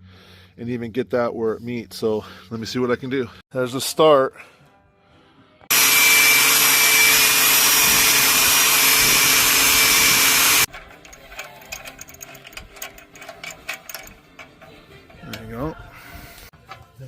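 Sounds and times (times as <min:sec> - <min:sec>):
power tool running: 0:05.7 - 0:10.7.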